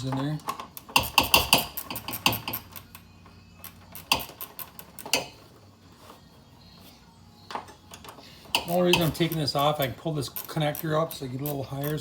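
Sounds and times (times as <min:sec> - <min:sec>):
hand tools clinking on metal: 0:08.0 - 0:12.0.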